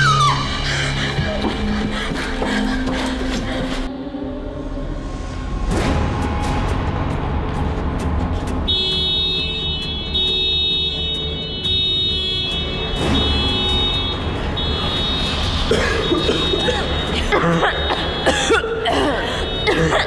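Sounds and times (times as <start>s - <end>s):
deep low drone: 0.0s - 8.6s.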